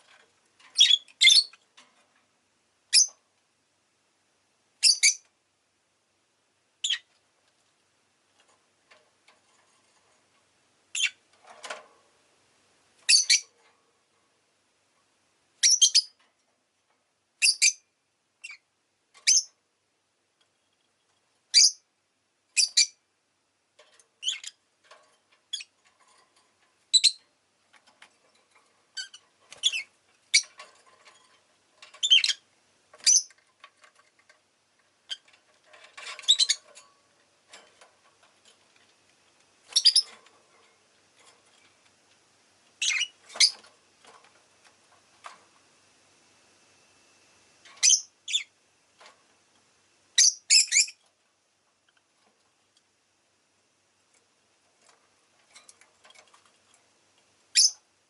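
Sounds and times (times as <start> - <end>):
soft bird chatter: 0.0 - 1.8, 10.9 - 11.3, 13.0 - 13.6, 24.1 - 34.3, 39.6 - 40.8, 42.8 - 44.3, 47.7 - 48.6, 50.2 - 51.1, 57.5 - 57.9
lovebird chirping: 0.8 - 1.6, 2.9 - 3.1, 4.8 - 5.2, 6.8 - 7.1, 10.9 - 11.2, 13.1 - 13.5, 15.6 - 16.2, 17.4 - 18.6, 19.2 - 19.5, 21.5 - 21.8, 22.5 - 23.0, 24.2 - 24.6, 25.5 - 25.8, 26.9 - 27.2, 29.0 - 30.5, 32.0 - 32.4, 33.0 - 33.4, 36.2 - 36.7, 39.7 - 40.1, 42.8 - 43.6, 47.8 - 48.5, 50.2 - 51.0, 57.5 - 57.8.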